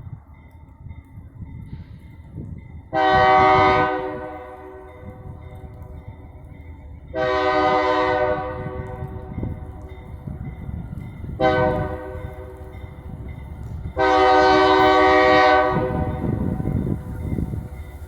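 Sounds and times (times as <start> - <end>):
moving train rumble: 0.0 - 18.0
locomotive air horn blasts: 2.9 - 4.9, 7.2 - 9.2, 11.4 - 12.7, 14.0 - 16.7.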